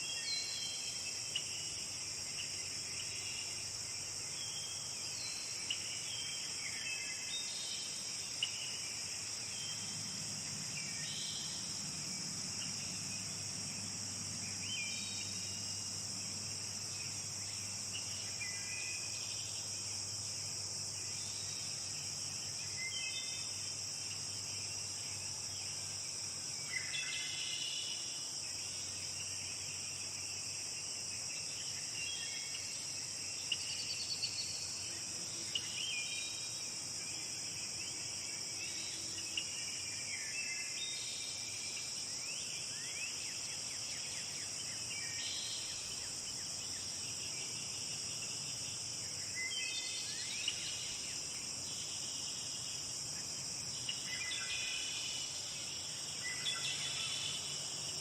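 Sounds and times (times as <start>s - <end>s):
insect chorus: 0.0s - 58.0s.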